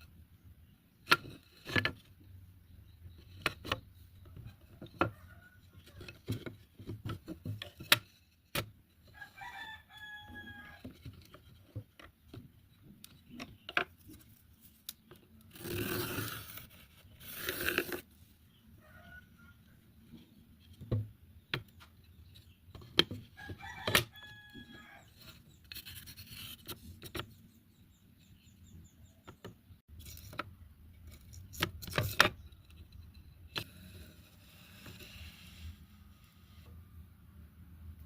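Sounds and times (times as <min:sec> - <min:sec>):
rough scraping strokes: 0:15.5 - 0:18.3.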